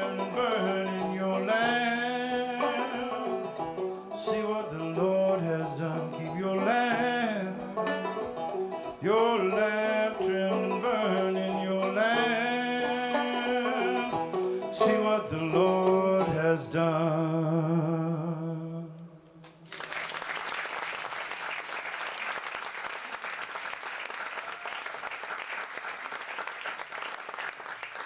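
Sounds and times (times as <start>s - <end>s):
man singing gospel: 0.0s - 3.4s, 4.1s - 7.7s, 9.0s - 19.2s
banjo: 0.0s - 19.3s
audience applause: 19.6s - 28.0s.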